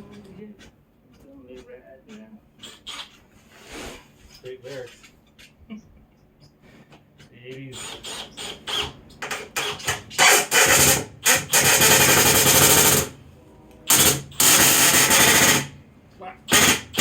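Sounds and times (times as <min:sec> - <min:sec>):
power drill driving screws: 0:07.8 - 0:13.1, 0:13.9 - 0:15.8, 0:16.5 - 0:17.0.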